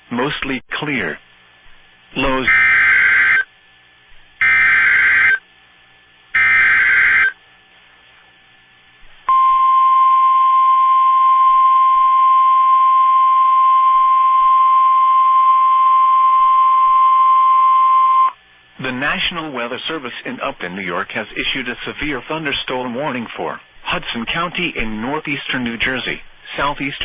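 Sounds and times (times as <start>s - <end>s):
steady warning alarm tone: 2.2s - 3.5s, 4.4s - 5.4s, 6.3s - 7.4s, 9.3s - 18.4s.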